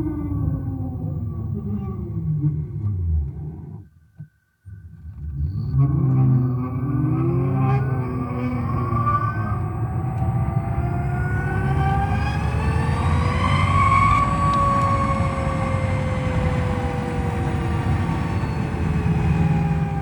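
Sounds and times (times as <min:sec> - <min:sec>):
low road rumble: 0:00.0 - 0:20.0
electric motorcycle motor whining: 0:06.7 - 0:20.0.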